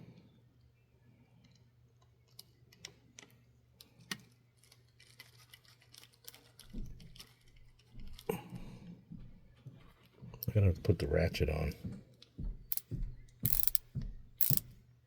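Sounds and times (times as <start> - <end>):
small tools clicking on metal: 12.7 - 13.8, 14.4 - 14.6.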